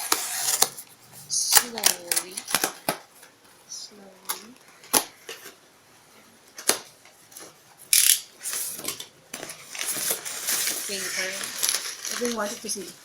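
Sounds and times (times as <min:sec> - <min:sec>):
scraping and rustling: 0:08.4 - 0:13.0.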